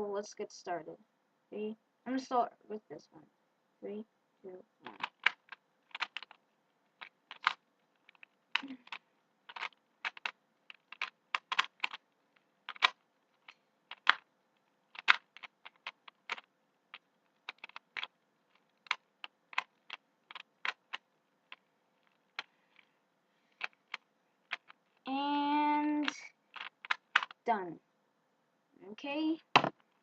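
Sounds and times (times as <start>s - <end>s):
puzzle cube plastic clicks: 4.8s - 22.9s, 23.5s - 25.0s, 26.0s - 27.4s.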